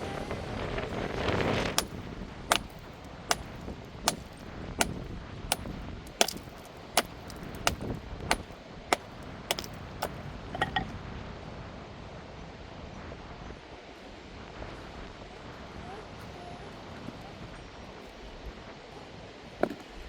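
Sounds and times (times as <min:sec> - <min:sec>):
sharp knocks: 0:01.8 - 0:10.9.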